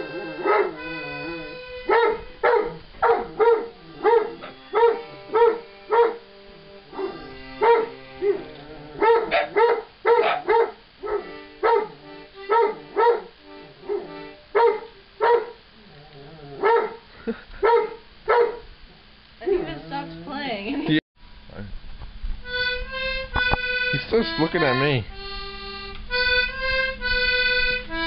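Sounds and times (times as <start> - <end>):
dog barking: 0.0 - 6.2, 6.9 - 15.6, 16.6 - 17.0, 17.6 - 18.7
instrument playing held notes: 0.0 - 9.2, 11.0 - 15.1, 22.4 - 28.0.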